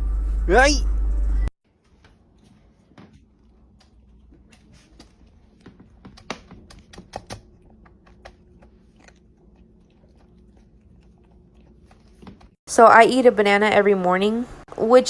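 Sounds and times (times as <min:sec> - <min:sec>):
faint low hum: 0:00.0 - 0:12.6.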